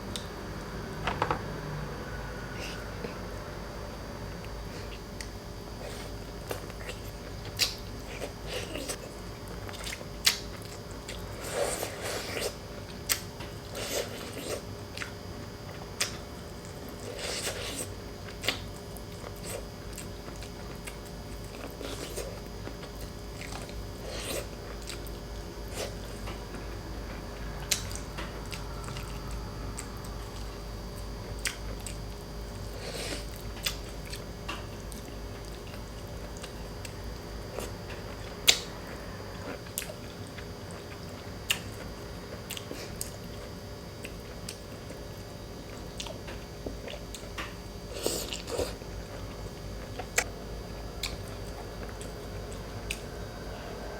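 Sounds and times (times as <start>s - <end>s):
person chewing: 4.8s - 26.6s, 31.3s - 38.7s, 39.4s - 43.4s, 45.7s - 53.1s.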